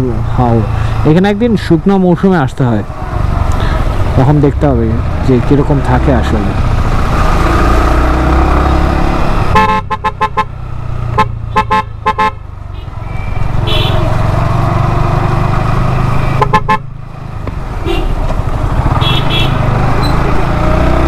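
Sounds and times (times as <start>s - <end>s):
engine and road rumble: 0.0s - 21.0s
vehicle horn short toots: 9.5s - 10.5s, 11.2s - 12.9s, 13.6s - 14.1s, 19.0s - 19.6s.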